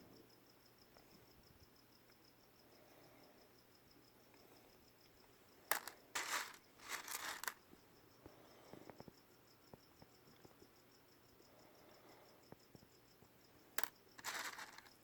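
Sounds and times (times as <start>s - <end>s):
parcel crinkling: 5.7s - 7.6s, 13.8s - 15.0s
stones clicking: 5.7s - 7.6s, 13.8s - 15.0s.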